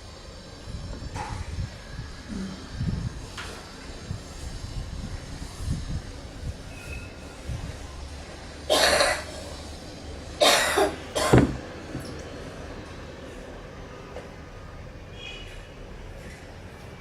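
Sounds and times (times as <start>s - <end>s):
person coughing: 8.7s - 9.3s, 10.4s - 11.5s.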